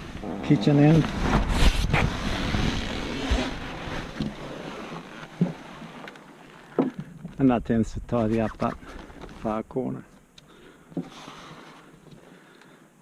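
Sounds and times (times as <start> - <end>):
canvas rustling: 0.0 - 9.5.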